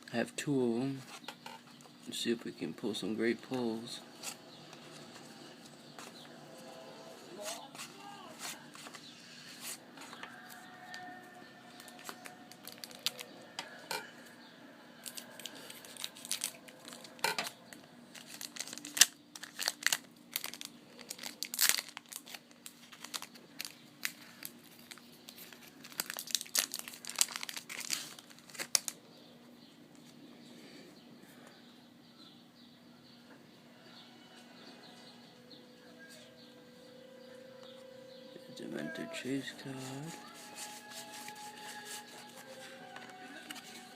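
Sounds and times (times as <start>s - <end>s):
wrappers tearing and crinkling: 11.7s - 13.4s, 15.0s - 29.0s, 39.7s - 43.9s.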